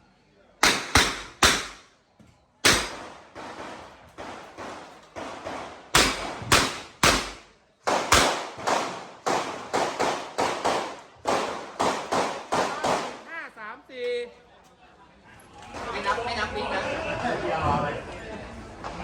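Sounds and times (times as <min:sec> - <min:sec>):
revolver gunshots: 0:00.6 - 0:01.9, 0:02.6 - 0:13.3.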